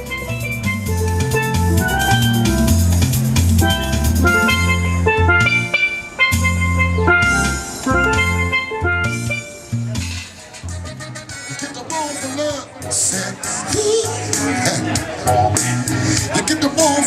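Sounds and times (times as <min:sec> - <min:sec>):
ringing melodic notes: 0:00.0 - 0:10.2
bass line: 0:00.0 - 0:11.6, 0:12.3 - 0:16.7
drum kit: 0:00.0 - 0:11.6
upbeat music: 0:00.0 - 0:17.0.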